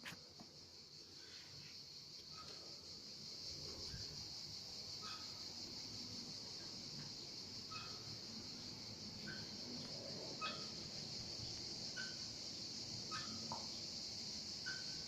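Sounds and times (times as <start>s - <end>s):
insect buzz: 0.0s - 15.0s
swing squeaking: 10.4s - 10.7s.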